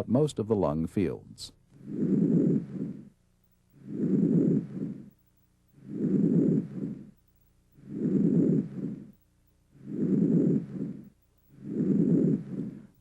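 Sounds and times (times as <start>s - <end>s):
breath sounds through stethoscope: 1.8s - 7.2s, 7.8s - 13.0s.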